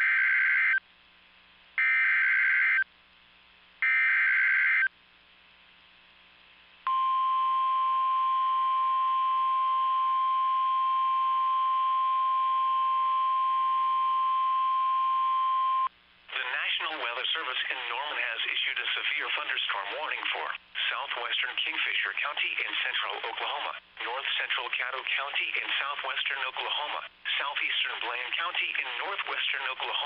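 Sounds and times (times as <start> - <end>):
steady single-pitch alert tone: 6.9 - 15.9.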